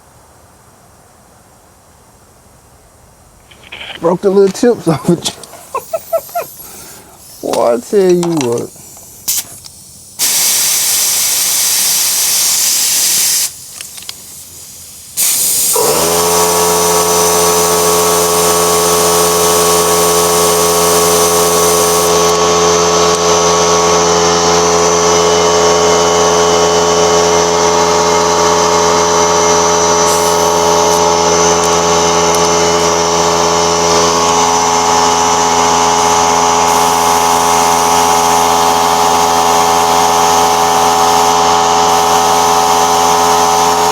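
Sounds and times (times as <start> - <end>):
air compressor motor running: 3.5 - 43.9
compressed air hissing: 5.3 - 22.4, 30.0 - 32.3, 34.2 - 43.9.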